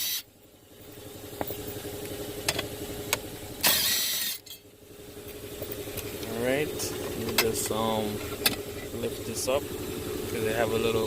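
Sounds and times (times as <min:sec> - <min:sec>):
car running hum: 0:00.0 - 0:11.0
power tool bursts: 0:03.6 - 0:04.4.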